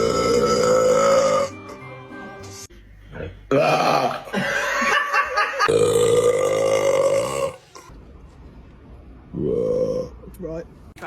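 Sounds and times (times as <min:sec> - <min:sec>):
woman burping loudly: 0:00.0 - 0:01.5, 0:03.5 - 0:04.4, 0:05.6 - 0:07.6.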